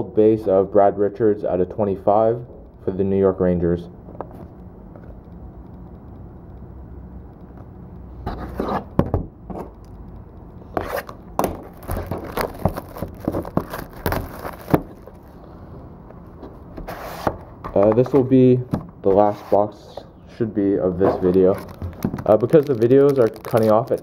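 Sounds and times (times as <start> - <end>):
trading cards and packaging handled: 10.6 - 15.4, 21.0 - 24.0.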